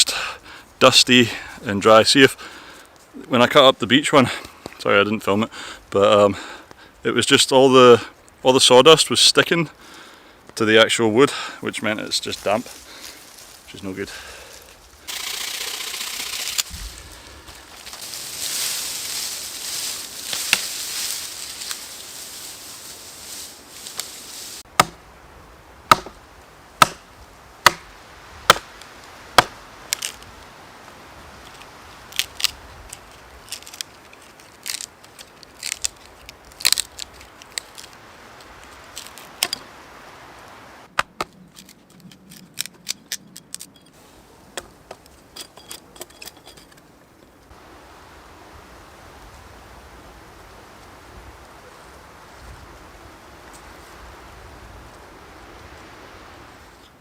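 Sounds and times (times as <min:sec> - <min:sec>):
chopping strikes on wood: 0:24.7 - 0:25.0, 0:25.9 - 0:26.2, 0:26.8 - 0:27.0, 0:27.6 - 0:27.9, 0:28.5 - 0:28.7, 0:29.4 - 0:29.6.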